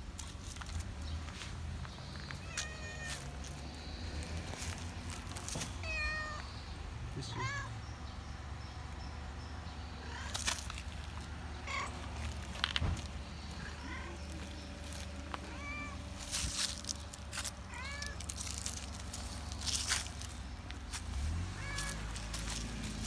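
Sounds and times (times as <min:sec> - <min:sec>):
clicks and rustles: 0:00.0 - 0:05.8, 0:10.3 - 0:23.0
cat meowing: 0:02.4 - 0:03.2, 0:05.8 - 0:06.5, 0:07.3 - 0:07.7, 0:11.6 - 0:12.0, 0:13.5 - 0:14.5, 0:15.4 - 0:16.0, 0:17.7 - 0:18.2, 0:21.6 - 0:22.2.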